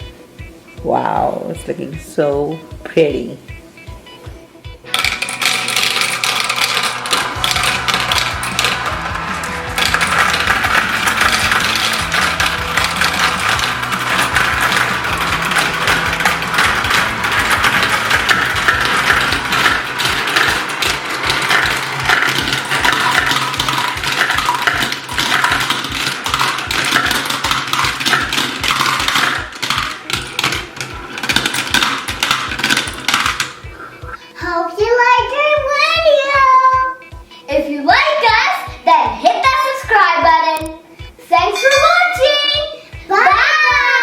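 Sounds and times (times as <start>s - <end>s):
glass marbles clattering down marble run: 4.9s - 33.8s.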